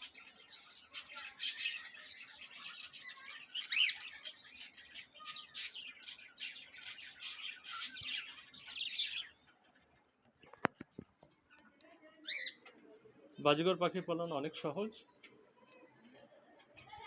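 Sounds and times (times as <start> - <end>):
budgerigars chirping: 0.9 - 9.5.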